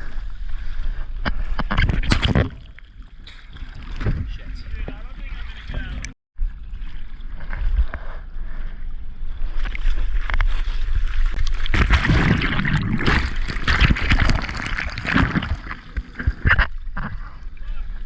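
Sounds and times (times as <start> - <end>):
ocean water splashing: 9.8 - 17.6.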